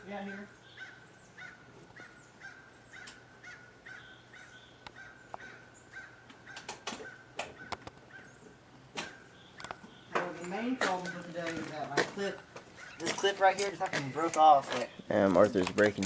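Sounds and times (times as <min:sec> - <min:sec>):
sharp clicks: 0:06.3 - 0:08.1.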